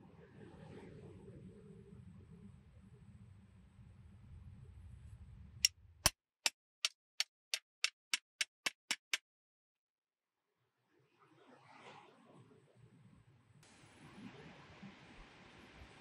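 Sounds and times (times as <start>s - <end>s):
sharp ticks: 6.8s - 9.2s.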